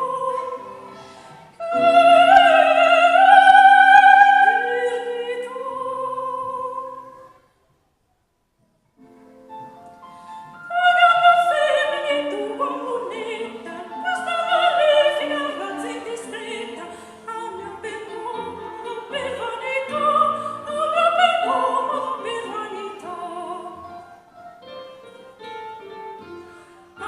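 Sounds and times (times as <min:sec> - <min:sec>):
operatic singing with vibrato: 0:00.0 - 0:07.5, 0:10.6 - 0:24.3
instrumental accompaniment: 0:21.4 - 0:27.0.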